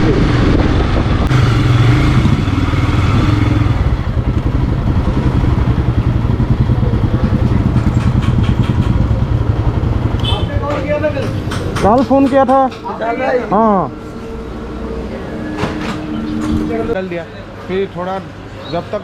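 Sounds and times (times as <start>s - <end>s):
motorcycle engine running: 0.0s - 12.3s.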